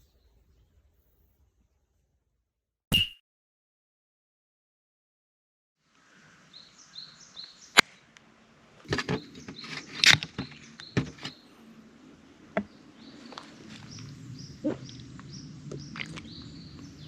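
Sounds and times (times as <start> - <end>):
small birds chirping: 6.0 - 8.2, 8.8 - 17.0.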